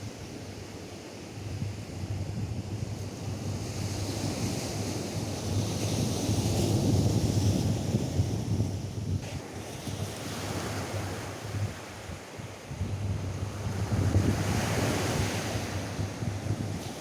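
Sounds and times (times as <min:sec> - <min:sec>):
wind buffeting microphone: 0:06.4 - 0:17.0
surf washing on sandy beach: 0:09.2 - 0:17.0.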